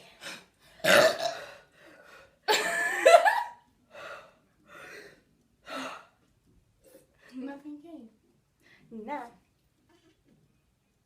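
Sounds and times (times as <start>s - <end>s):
soft breaths: 8.5s - 8.9s.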